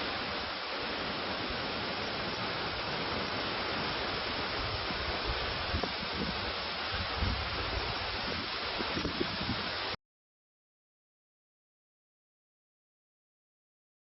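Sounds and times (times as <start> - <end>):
waterfall rushing: 0.0 - 10.0.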